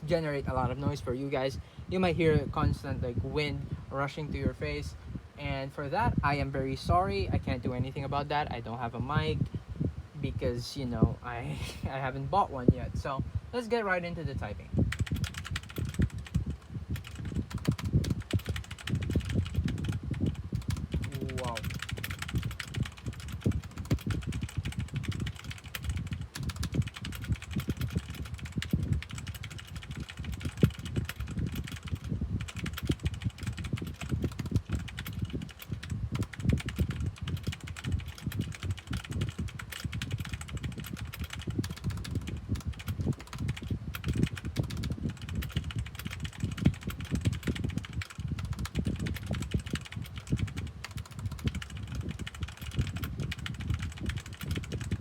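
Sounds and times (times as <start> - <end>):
room fan rushing air: 0.0 - 55.0
fast mechanical keyboard typing: 14.9 - 55.0.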